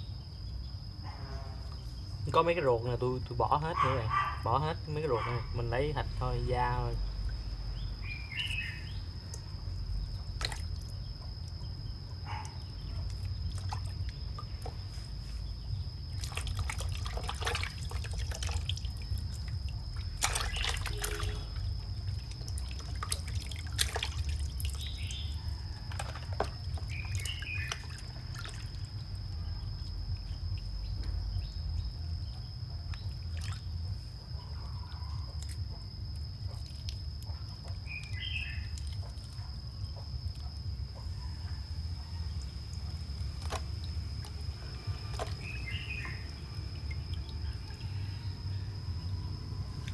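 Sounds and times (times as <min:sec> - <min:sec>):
water dripping and trickling: 0:03.2 - 0:49.9
sharp splashes and knocks: 0:10.2 - 0:11.0, 0:13.0 - 0:14.9, 0:16.1 - 0:29.0, 0:32.9 - 0:33.9, 0:43.2 - 0:47.6.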